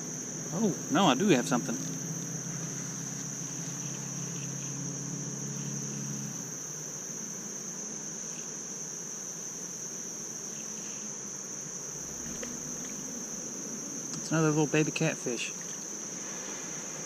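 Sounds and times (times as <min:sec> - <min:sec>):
crickets trilling: 0:00.0 - 0:17.0
low hum: 0:11.7 - 0:14.8.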